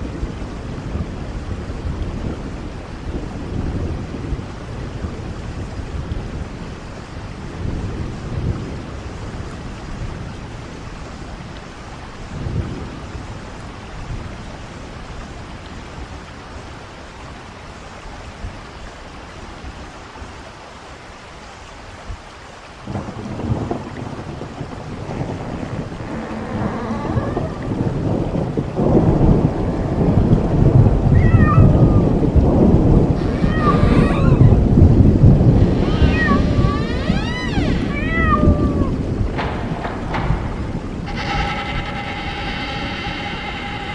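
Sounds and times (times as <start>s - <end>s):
low rolling thunder: 0.0s - 16.8s, 22.8s - 43.9s
steady rain: 0.0s - 43.9s
high yowling cries: 26.0s - 28.0s, 31.1s - 32.2s, 33.0s - 34.8s, 35.5s - 39.1s.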